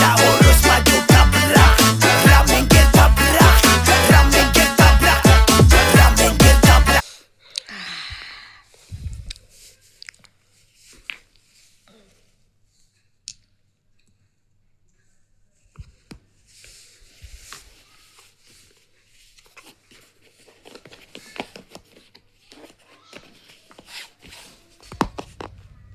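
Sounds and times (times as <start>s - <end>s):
crinkling and rustling: 15.8s - 25.7s.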